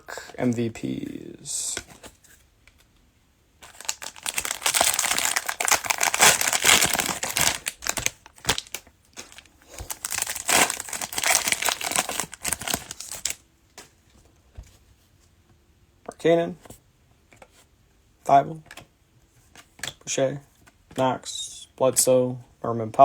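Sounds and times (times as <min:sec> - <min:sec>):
plastic wrapper tearing and crinkling: 0:03.6 - 0:13.4.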